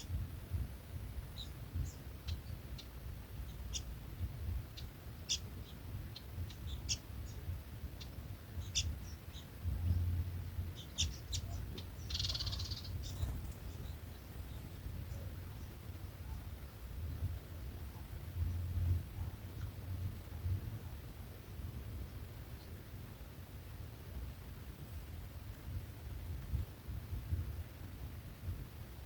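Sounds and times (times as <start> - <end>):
small birds chirping: 0.0 - 22.8.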